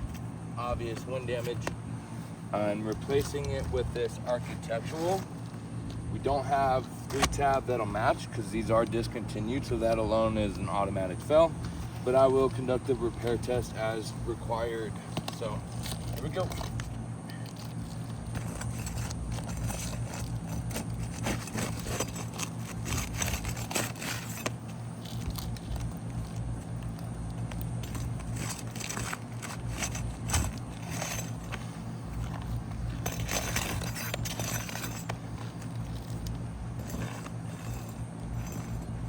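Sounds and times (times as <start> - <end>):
steady low hum: 0.0 - 39.0
roofing tool prying shingle: 15.0 - 39.0.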